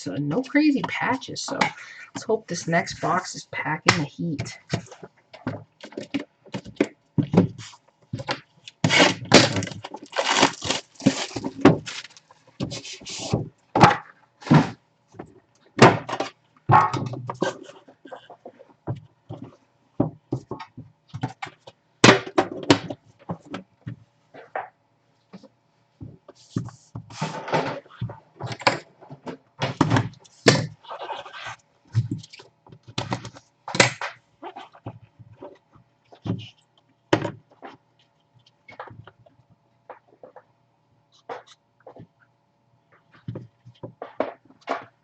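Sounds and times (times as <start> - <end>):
rustling and tearing packaging: 8.7 - 13.3.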